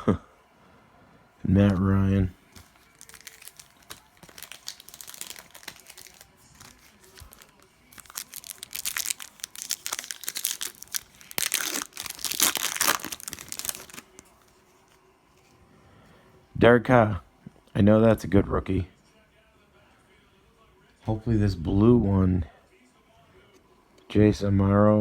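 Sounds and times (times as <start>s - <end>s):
foil wrapper crinkling and tearing: 2.5s - 14.3s.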